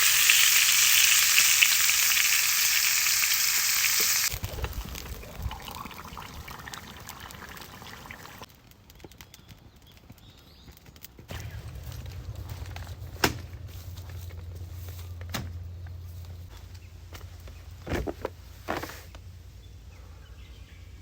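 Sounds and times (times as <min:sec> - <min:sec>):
food sizzling in hot fat: 0:00.0 - 0:08.5
faint crackles and clicks: 0:03.2 - 0:07.8, 0:08.4 - 0:19.3.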